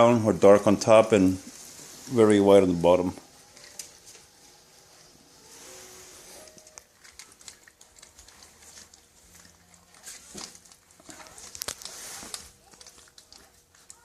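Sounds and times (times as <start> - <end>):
puppies pattering and tapping: 6.4 - 14.0.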